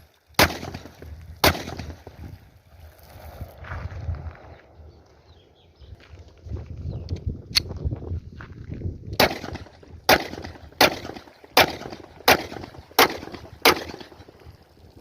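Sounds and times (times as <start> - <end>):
pistol shots with ringing echo: 0.4 - 2.0, 9.2 - 14.3.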